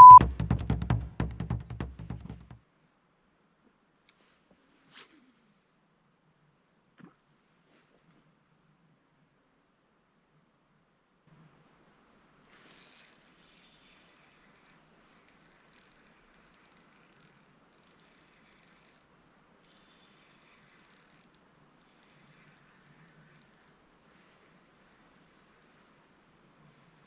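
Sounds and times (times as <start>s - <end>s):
fishing reel ratchet clicking: 12.5s - 23.8s, 24.9s - 26.1s.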